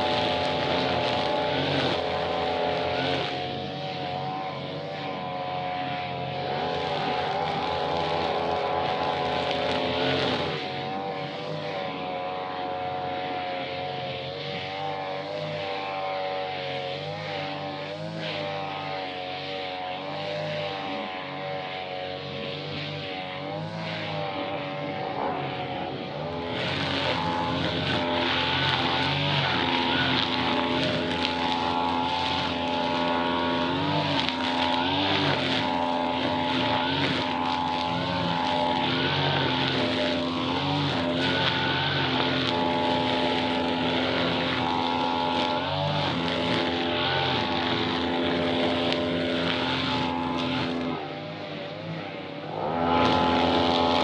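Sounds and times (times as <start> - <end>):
two-stroke grass-cutter engine revving: 0.0 - 54.0.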